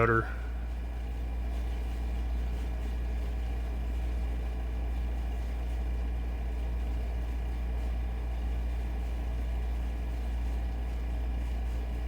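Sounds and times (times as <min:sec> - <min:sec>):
faint high steady tones: 0:00.0 - 0:00.5
steady low hum: 0:00.0 - 0:02.3.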